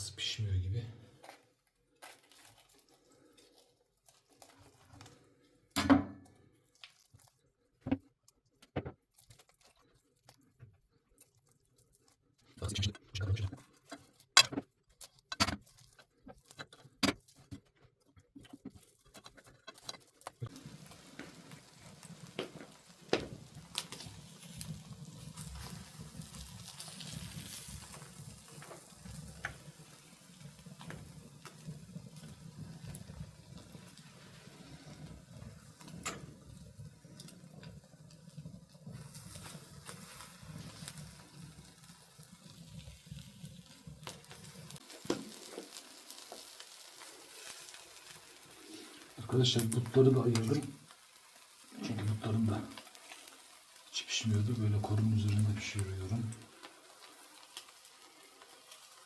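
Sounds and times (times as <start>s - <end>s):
steady hiss with low hum: 32.2s - 58.8s.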